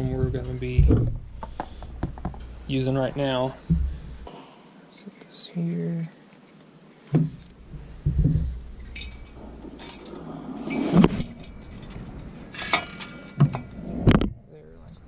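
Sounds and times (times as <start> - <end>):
metal clinks and knocks: 7.3 - 13.7.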